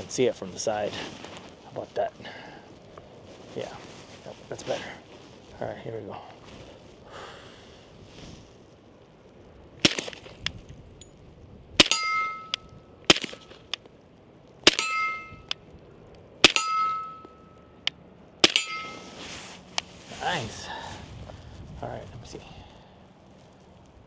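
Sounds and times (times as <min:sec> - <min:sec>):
suppressed pistol shots: 0:09.8 - 0:10.6, 0:11.8 - 0:13.8, 0:14.7 - 0:15.6, 0:16.4 - 0:19.2
ringing metallic clang: 0:11.8 - 0:13.8, 0:14.7 - 0:15.6, 0:16.4 - 0:19.4.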